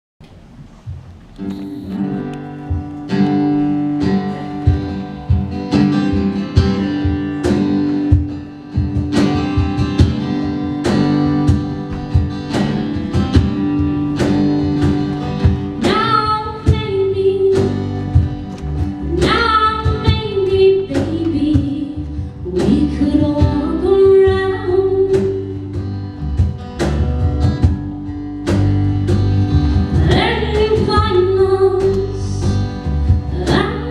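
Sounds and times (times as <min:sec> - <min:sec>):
band playing pop song: 0:01.4 - 0:33.9
woman singing: 0:15.6 - 0:18.3, 0:19.0 - 0:25.7, 0:29.9 - 0:33.9.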